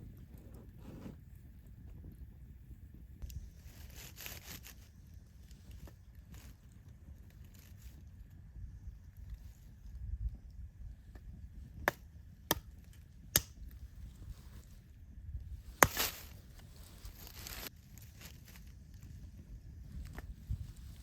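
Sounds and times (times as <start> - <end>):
rustling noise: 0.0 - 2.1, 3.2 - 8.4, 13.8 - 21.0
firewood being chopped: 11.1 - 13.8, 15.7 - 16.4.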